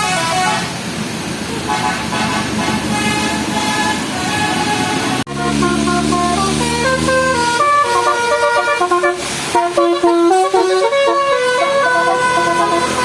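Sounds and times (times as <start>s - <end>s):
musical bus horn tune: 0.0s - 0.9s, 1.6s - 13.0s.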